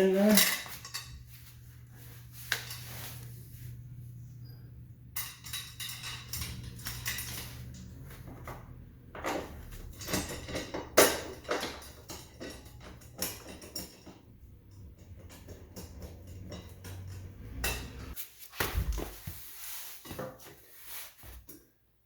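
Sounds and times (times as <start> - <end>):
metal clinking and knocking: 0.3 - 1.4, 5.1 - 18.2.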